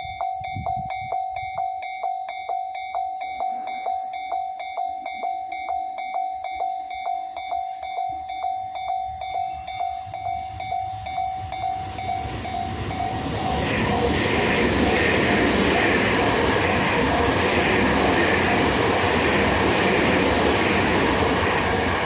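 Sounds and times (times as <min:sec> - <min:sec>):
level crossing warning bell: 0:00.0 - 0:22.0
train rumble: 0:00.0 - 0:22.0.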